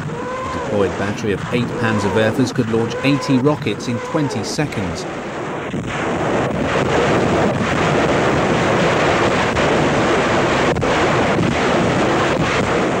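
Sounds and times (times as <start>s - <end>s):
rockets launching with rushing roar: 0.0s - 13.0s.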